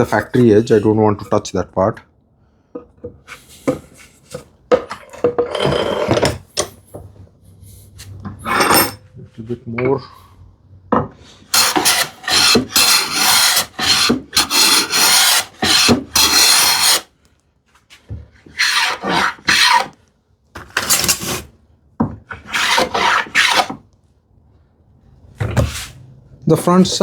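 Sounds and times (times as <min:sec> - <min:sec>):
hand plane shaving wood: 0:11.6 - 0:17.1, 0:18.5 - 0:20.0, 0:22.4 - 0:23.8.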